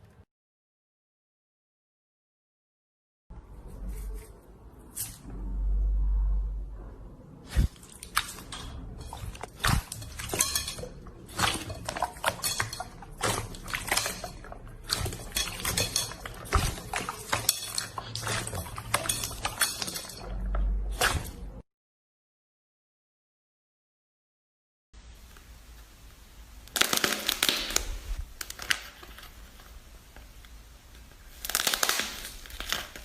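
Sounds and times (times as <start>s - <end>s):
low rumble: 5.2s - 7.8s
slime clicking and crackling: 26.7s - 29.6s, 31.3s - 33.0s.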